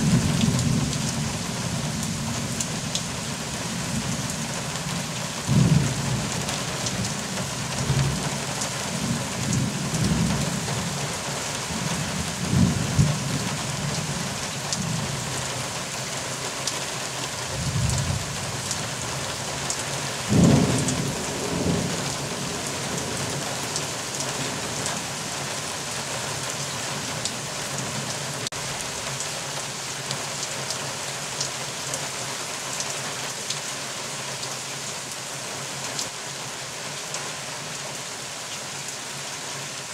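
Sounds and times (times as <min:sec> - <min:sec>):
thunder rumbling: 0:00.0 - 0:03.0, 0:05.4 - 0:08.4, 0:20.3 - 0:23.7
rain hissing: 0:00.0 - 0:39.9.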